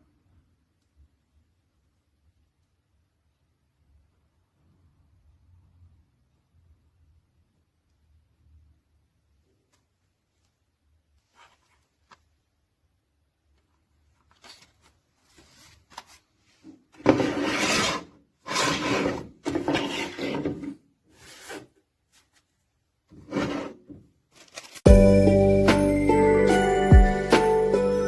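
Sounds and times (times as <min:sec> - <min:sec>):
rubbing and scraping: 0:14.3 - 0:22.5, 0:23.1 - 0:24.8.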